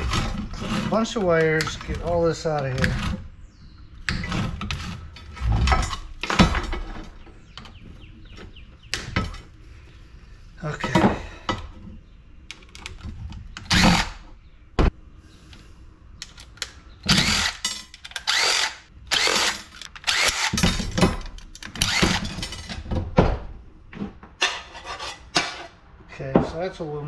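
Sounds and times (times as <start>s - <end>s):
cordless drill short bursts: 18.3s - 20.6s.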